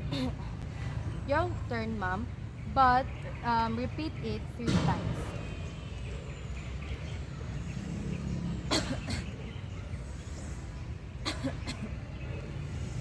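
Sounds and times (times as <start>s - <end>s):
woman coughing: 8.7s - 9.3s.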